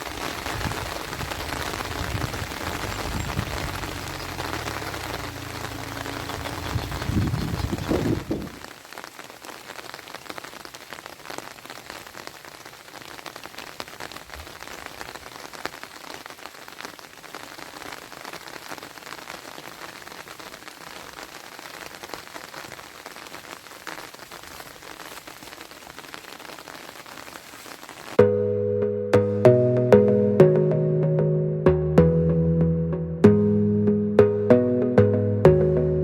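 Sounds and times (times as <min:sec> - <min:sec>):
steady rain falling: 0:00.0 - 0:28.2.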